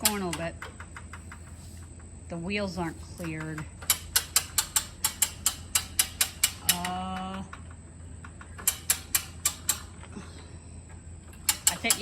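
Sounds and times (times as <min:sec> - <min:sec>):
ratchet clicking: 0:00.0 - 0:01.6, 0:03.2 - 0:10.0, 0:11.2 - 0:12.0.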